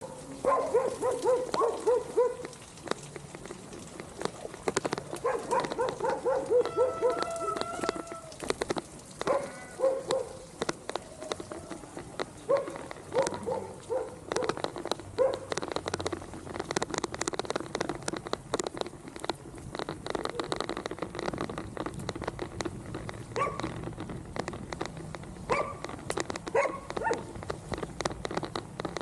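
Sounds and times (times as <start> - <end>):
huskies whining and yipping: 0.0 - 2.6, 5.2 - 8.5, 9.2 - 15.6, 23.3 - 23.8, 25.5 - 27.4
raindrops ticking: 0.0 - 29.0.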